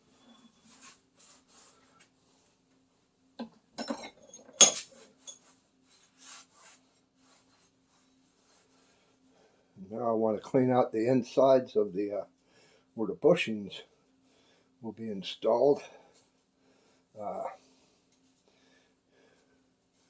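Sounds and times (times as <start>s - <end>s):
soft rubbing on workbench: 0.0s - 3.1s, 4.9s - 9.5s
metal parts clattering: 3.8s - 5.4s.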